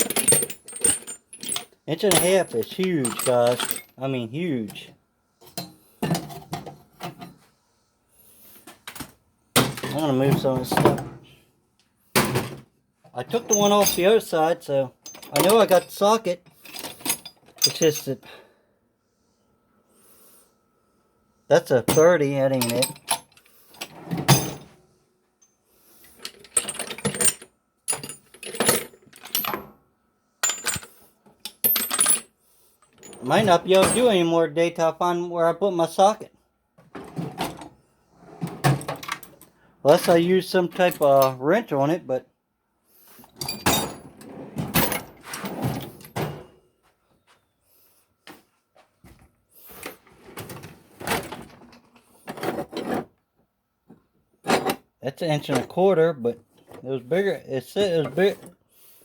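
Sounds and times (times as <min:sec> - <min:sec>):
metal tools clinking: 0:00.0 - 0:04.0, 0:13.3 - 0:18.3, 0:21.9 - 0:24.7, 0:25.4 - 0:29.6, 0:30.4 - 0:34.3, 0:40.8 - 0:41.4, 0:43.4 - 0:44.1
drawer being handled: 0:43.4 - 0:46.5.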